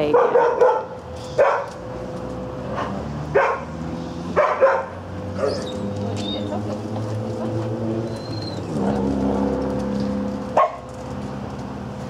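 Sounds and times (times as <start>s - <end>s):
dogs barking: 0.0s - 1.8s, 2.8s - 6.8s, 10.5s - 11.0s
high-pitched dog yips: 4.4s - 6.6s.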